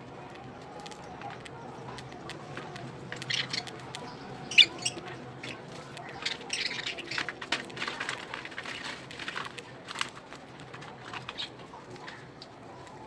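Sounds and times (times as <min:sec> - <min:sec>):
budgerigars chirping and squawking: 0:02.0 - 0:07.3.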